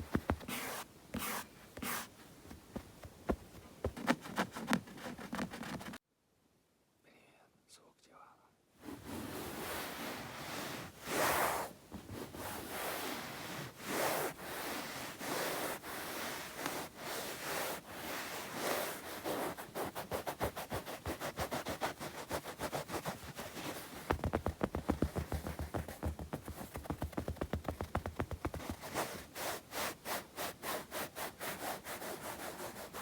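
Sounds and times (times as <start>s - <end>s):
hands rubbing together: 0.0s - 6.0s, 9.2s - 33.0s.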